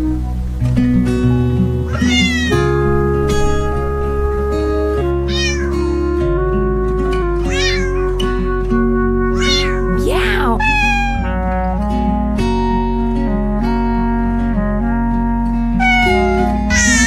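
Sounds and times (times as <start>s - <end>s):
background music with held notes: 0.0s - 17.0s
cat meowing: 1.9s - 3.8s, 5.2s - 6.0s, 7.4s - 8.3s, 9.3s - 11.4s, 15.8s - 17.0s.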